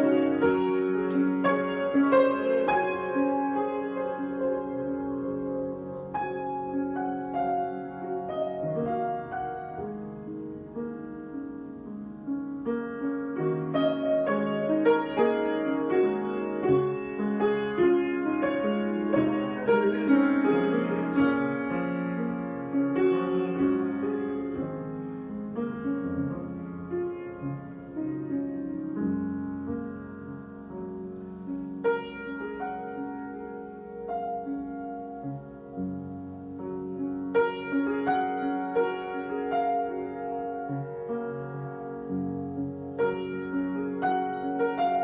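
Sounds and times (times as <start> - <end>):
solo piano improvisation: 0.0 - 45.0.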